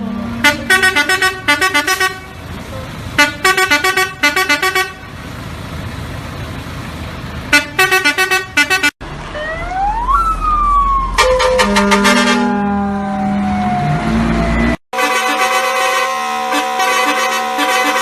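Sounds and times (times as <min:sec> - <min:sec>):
engine noise: 0:00.0 - 0:18.0
vehicle musical horn beeping: 0:00.4 - 0:02.4, 0:03.2 - 0:05.1, 0:07.5 - 0:09.0, 0:11.2 - 0:13.0, 0:14.9 - 0:18.0
siren wailing: 0:09.3 - 0:18.0.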